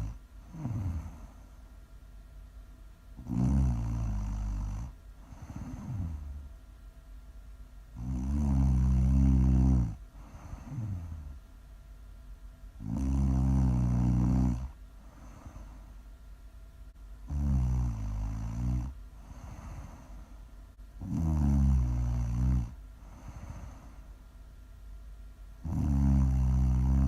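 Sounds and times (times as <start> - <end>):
loud snoring: 0.0 - 1.4, 3.2 - 6.5, 8.0 - 11.4, 12.8 - 15.7, 17.3 - 20.1, 21.0 - 24.0, 25.6 - 27.0
quiet breathing: 0.0 - 1.9, 3.2 - 6.7, 7.9 - 11.6, 12.8 - 16.3, 16.9 - 24.3.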